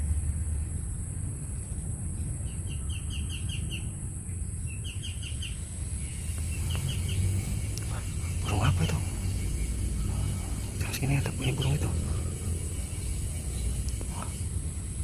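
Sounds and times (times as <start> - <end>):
low rumble: 0.0 - 15.0
bird chirping: 0.5 - 15.0
steady high-pitched drone: 5.1 - 15.0.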